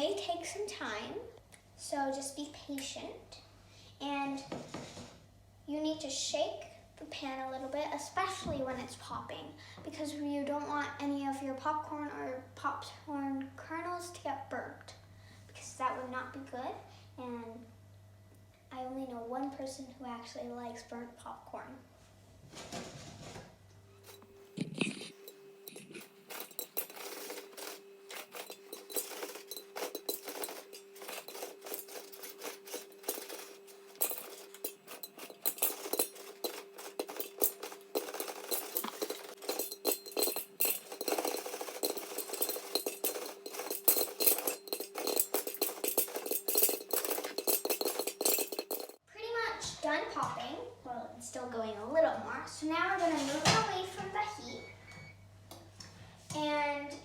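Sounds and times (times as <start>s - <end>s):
popcorn popping in covered pot: 24.1s - 49.0s.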